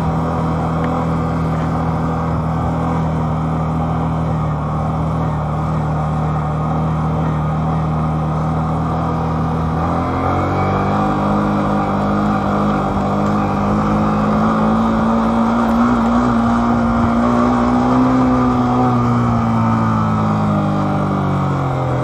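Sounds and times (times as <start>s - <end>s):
vehicle engine accelerating: 0.0s - 22.0s.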